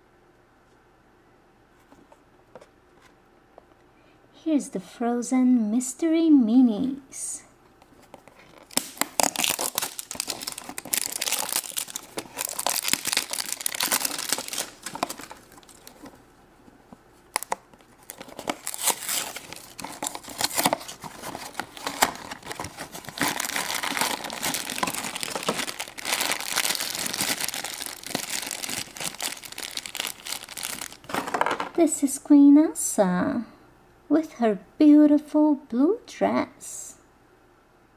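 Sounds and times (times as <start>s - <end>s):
toy packaging crinkling and tearing: 8.2s - 16.2s, 17.3s - 31.7s.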